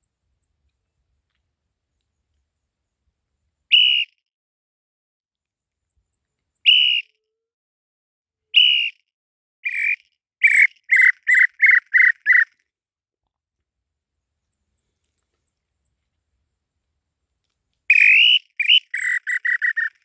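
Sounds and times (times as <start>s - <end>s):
bird whistling song: 3.7s - 4.1s, 6.6s - 7.1s, 8.6s - 9.0s, 9.6s - 12.5s, 17.9s - 20.0s.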